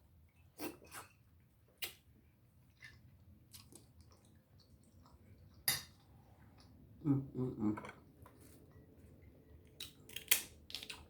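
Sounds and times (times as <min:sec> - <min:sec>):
crab shells cracking: 0:09.8 - 0:11.0.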